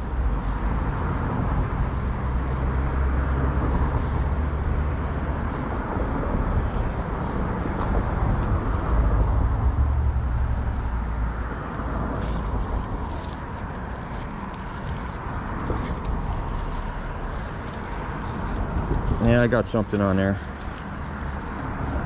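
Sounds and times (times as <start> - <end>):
steady rushing outdoor noise: 0.0 - 22.0
wind buffeting microphone: 0.0 - 22.0.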